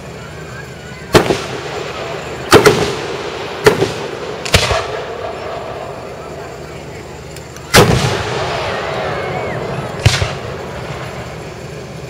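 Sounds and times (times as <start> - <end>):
fireworks shells booming: 1.1 - 6.6, 7.3 - 12.0.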